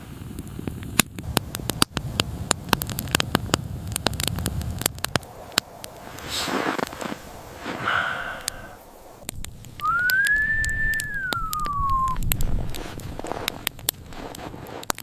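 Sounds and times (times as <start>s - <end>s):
low rumbling noise: 0.0s - 14.9s
long whistled note: 9.8s - 12.3s.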